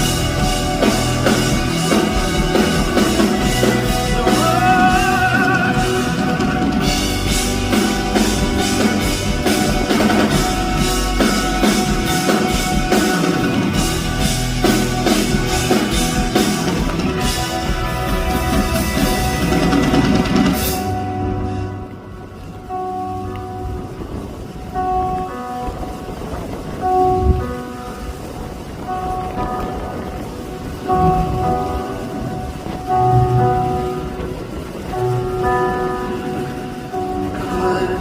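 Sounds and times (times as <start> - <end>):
drum kit beat: 0.0 - 21.7
live pop-rock band: 0.0 - 23.1.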